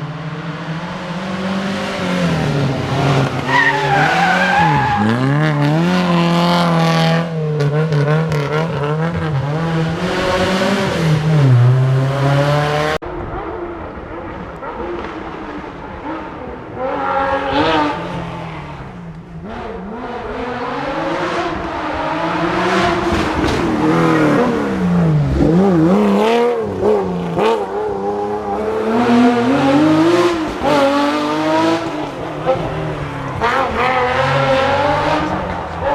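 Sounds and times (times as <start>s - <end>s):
rally car engine revving: 0.0s - 35.9s.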